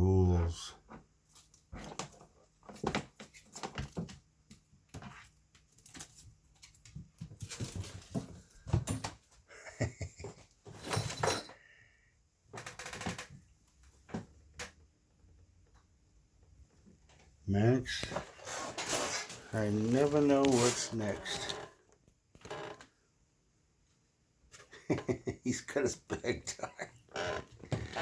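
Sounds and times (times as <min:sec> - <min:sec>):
cat pawing with taps and scrapes: 0:01.3 - 0:09.3.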